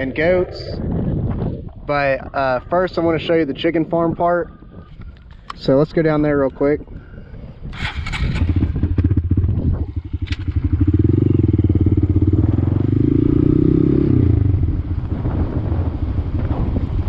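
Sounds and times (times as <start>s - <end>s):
motorcycle engine accelerating: 7.7s - 17.0s.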